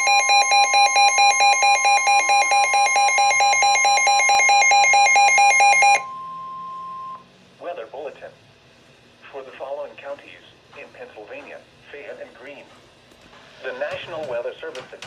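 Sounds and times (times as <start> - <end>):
rapid two-pitch alarm beeps: 0.0 - 7.2.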